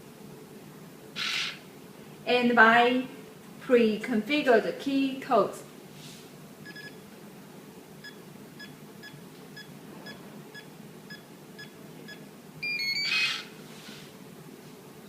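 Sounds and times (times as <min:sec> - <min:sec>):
keypad beeps: 0:08.0 - 0:13.4.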